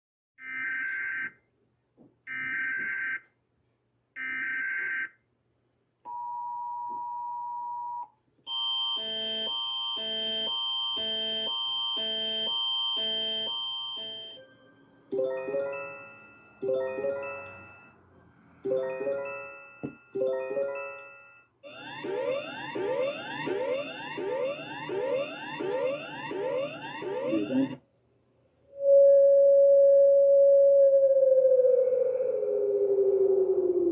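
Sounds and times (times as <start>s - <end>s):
pulsing multi-tone alarm: 8.5s - 14.5s, 15.2s - 18.0s, 18.7s - 27.8s
falling chime-like tones: 14.4s - 18.0s, 18.6s - 21.4s
rising electronic sweeps: 21.7s - 27.8s
buzzy data bursts: 22.0s - 27.8s
steady low tone: 28.8s - 33.9s.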